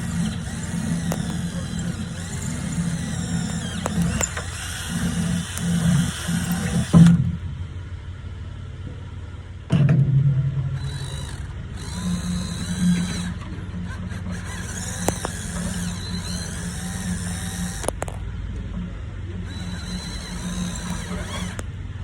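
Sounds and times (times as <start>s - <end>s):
power drill drilling metal: 0.0s - 7.3s, 10.8s - 18.2s, 19.4s - 21.7s.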